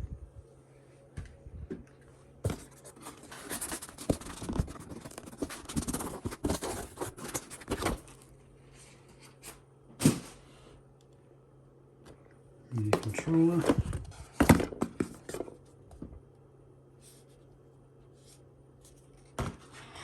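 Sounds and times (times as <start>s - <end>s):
cardboard and foam rustling: 2.4s - 9.5s.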